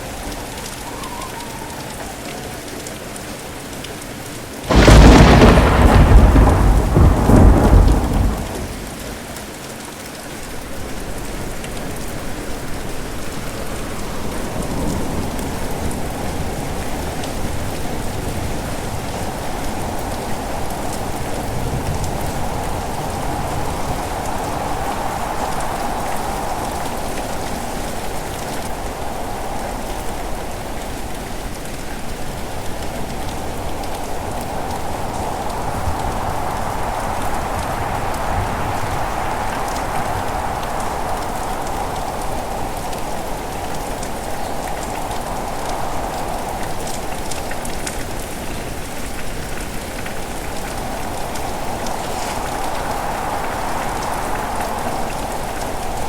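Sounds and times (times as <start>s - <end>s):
heavy rain: 0.0s - 56.0s
thunder rumbling: 4.7s - 9.5s, 33.3s - 47.9s, 48.9s - 56.0s
strong wind: 4.7s - 9.6s, 10.6s - 56.0s.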